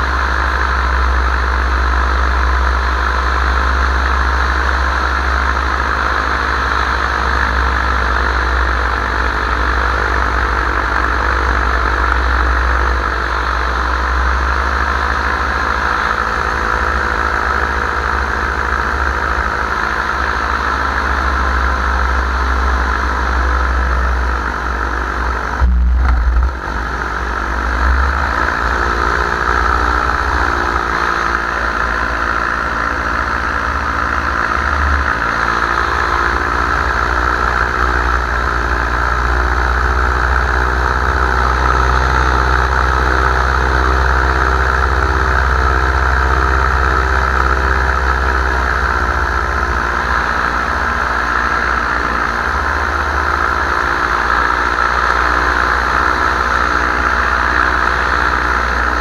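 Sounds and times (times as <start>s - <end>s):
wind rumble on microphone: 0.0s - 32.2s
paramotor engine and propeller: 0.0s - 59.0s.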